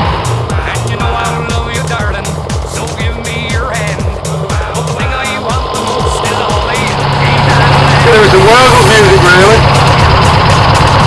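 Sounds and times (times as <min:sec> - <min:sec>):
tractor diesel engine running: 0:00.0 - 0:11.0
music with kick-drum beat and bass: 0:00.1 - 0:11.0.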